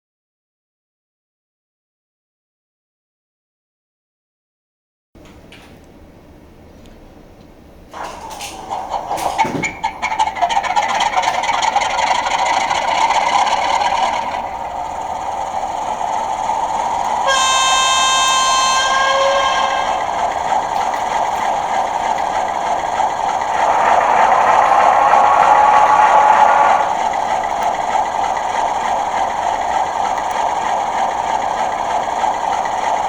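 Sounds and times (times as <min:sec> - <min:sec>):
diesel engine through small speaker: 0:10.8 - 0:33.0
locomotive horn blast: 0:17.2 - 0:21.2.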